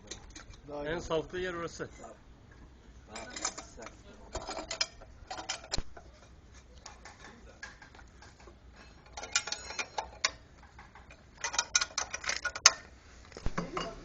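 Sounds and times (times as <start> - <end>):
metal parts clinking: 3.1 - 6.0, 6.8 - 14.0.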